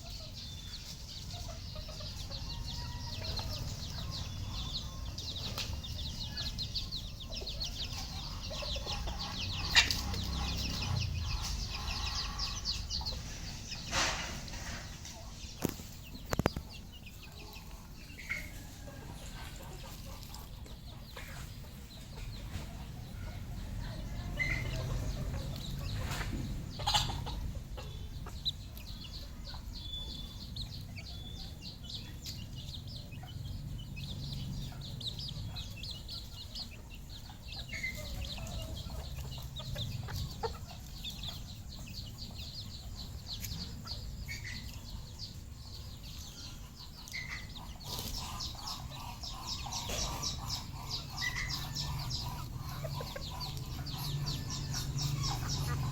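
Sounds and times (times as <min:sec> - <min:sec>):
junglefowl clucking: 0:07.2 - 0:15.8, 0:17.5 - 0:28.6, 0:46.8 - 0:55.9.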